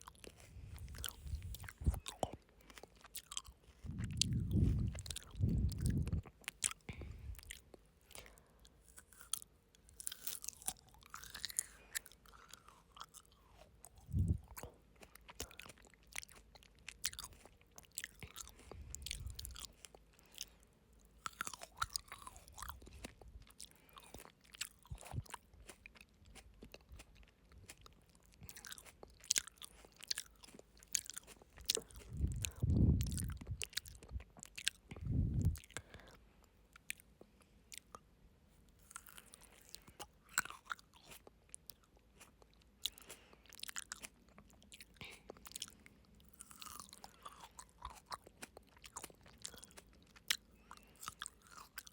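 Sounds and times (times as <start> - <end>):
chewing and crunching grapes: 0.0 - 51.9
wet mouth clicks: 0.5 - 8.3, 14.0 - 15.7, 31.2 - 36.1
low rumble: 3.8 - 6.3, 32.0 - 34.2, 34.9 - 35.6.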